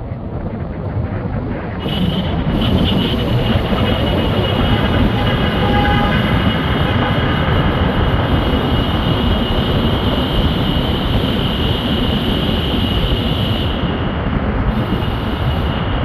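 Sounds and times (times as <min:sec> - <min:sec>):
car driving through road tunnel: 0:00.0 - 0:16.0.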